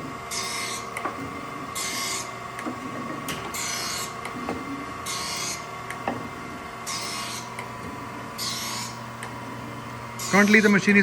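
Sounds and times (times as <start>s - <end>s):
machine humming: 0.0s - 11.0s
grinding wheel hissing on metal: 3.5s - 4.2s, 5.0s - 5.7s, 6.8s - 7.6s, 8.4s - 9.0s, 10.2s - 11.0s.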